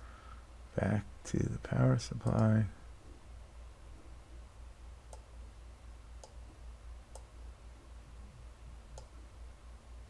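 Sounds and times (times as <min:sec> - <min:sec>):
low electrical hum: 0:00.0 - 0:10.0
computer mouse clicks: 0:02.2 - 0:02.5, 0:05.1 - 0:05.3, 0:06.2 - 0:06.4, 0:07.1 - 0:07.4, 0:08.9 - 0:09.2.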